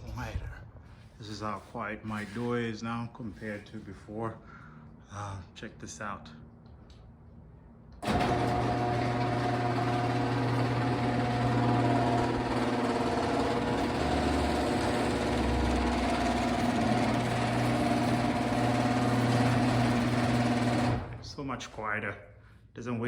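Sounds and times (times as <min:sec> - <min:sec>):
garage door opener motor hum: 0:08.0 - 0:21.4.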